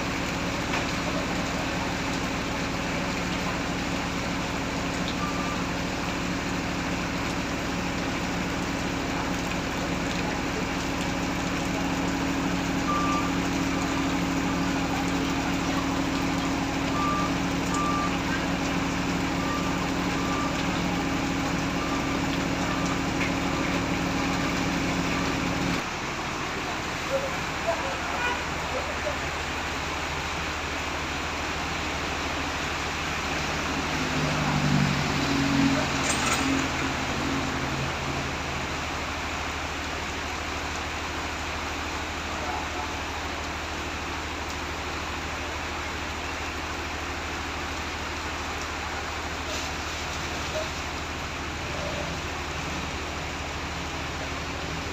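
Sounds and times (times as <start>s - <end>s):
vehicle engine idling: 0.0s - 36.0s
heavy rain hissing: 0.0s - 54.9s.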